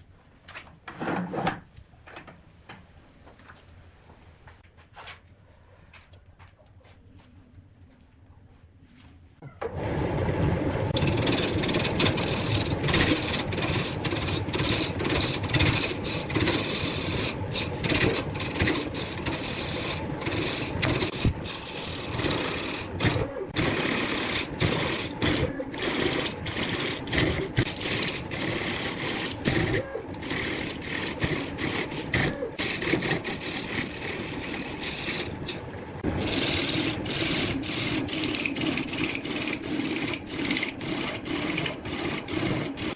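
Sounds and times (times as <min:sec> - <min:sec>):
wood lathe running: 0:10.8 - 0:42.9
turning tool cutting wood: 0:10.9 - 0:42.9.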